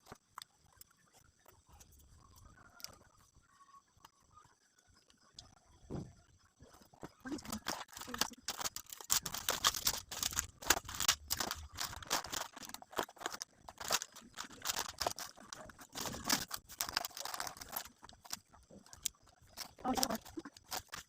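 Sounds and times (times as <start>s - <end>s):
plastic wrapping crinkling: 6.9s - 21.0s.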